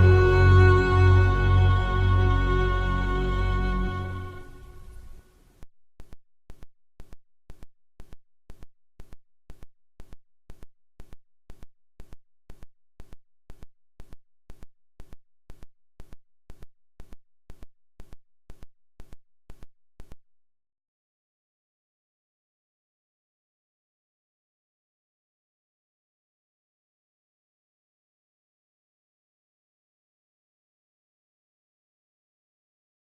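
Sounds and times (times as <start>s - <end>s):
regular sharp clicks: 6.0s - 20.2s.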